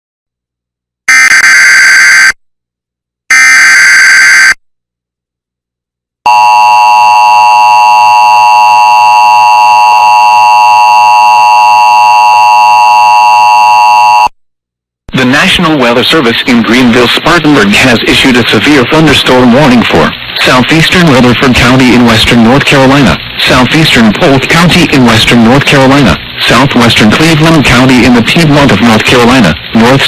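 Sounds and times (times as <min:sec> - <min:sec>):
two-tone attention signal: 0:06.3 - 0:14.3.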